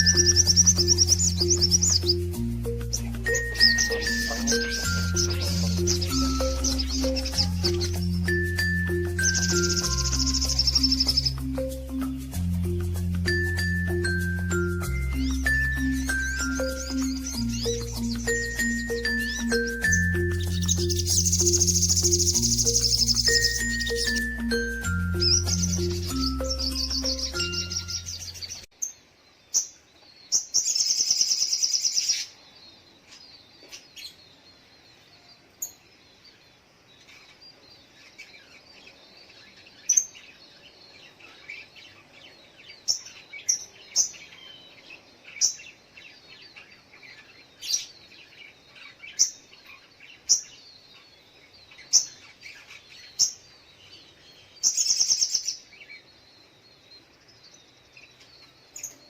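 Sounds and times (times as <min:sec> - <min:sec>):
bird chirping: 0:00.0 - 0:59.0
loud rapid bird trills: 0:14.9 - 0:28.7
faint twittering: 0:15.8 - 0:24.4.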